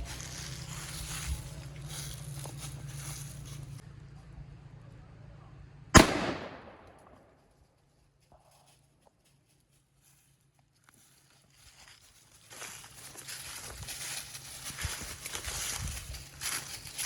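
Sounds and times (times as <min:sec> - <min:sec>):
gunshot with echo: 0:06.0 - 0:07.2.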